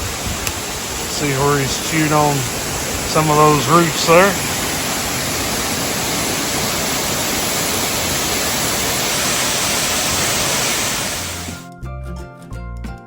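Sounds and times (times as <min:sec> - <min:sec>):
waterfall rushing: 0:00.0 - 0:11.6
music: 0:11.4 - 0:13.0.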